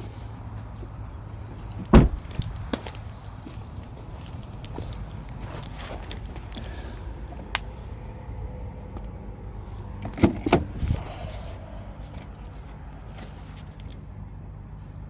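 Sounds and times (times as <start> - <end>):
low background rumble: 0.0 - 15.0
car door shutting: 1.8 - 2.5, 10.0 - 11.2.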